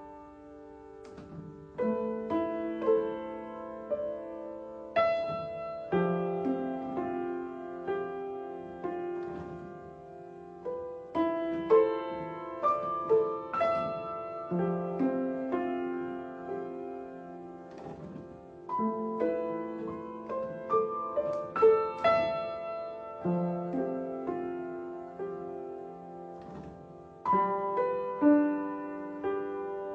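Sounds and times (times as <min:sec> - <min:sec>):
solo piano playing: 0:00.0 - 0:29.9.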